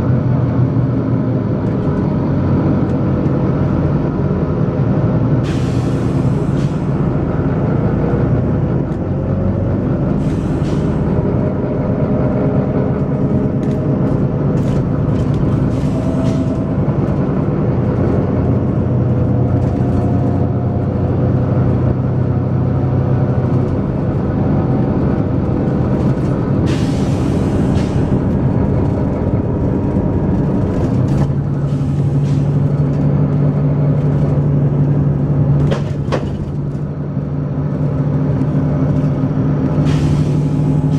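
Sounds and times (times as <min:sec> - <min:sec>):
diesel bus engine running hard: 0:00.0 - 0:40.9
air brake hisses: 0:05.4 - 0:07.1, 0:10.2 - 0:11.2, 0:15.6 - 0:17.1, 0:26.7 - 0:28.2, 0:39.8 - 0:40.9.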